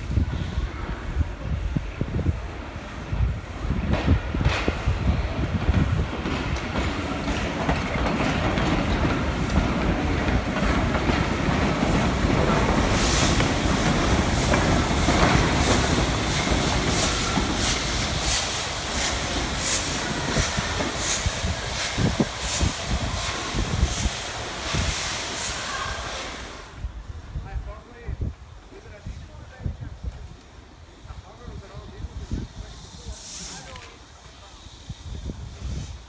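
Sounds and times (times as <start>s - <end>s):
train rumbling past: 0.0s - 27.2s
wheels clacking over rail joints: 4.0s - 26.8s.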